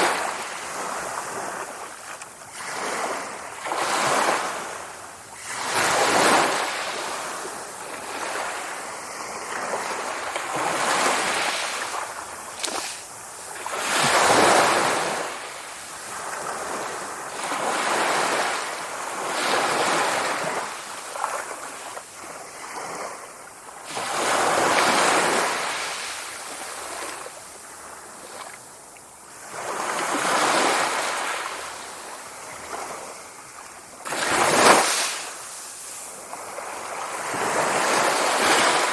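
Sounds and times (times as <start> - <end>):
sea waves breaking: 0.0 - 28.6, 29.4 - 38.9.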